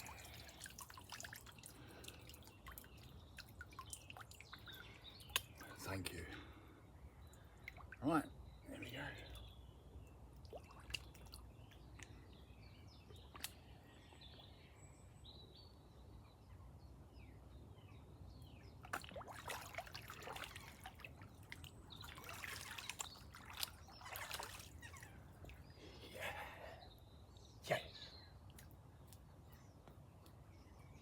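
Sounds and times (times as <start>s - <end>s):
water splashing and trickling: 0.0s - 9.5s, 10.1s - 12.2s, 18.6s - 26.8s.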